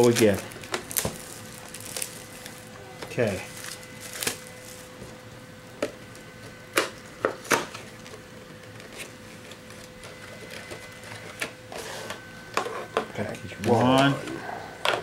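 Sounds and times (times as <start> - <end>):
foil packs rustling: 0.0 - 5.0
faint electronic hum: 0.0 - 15.0.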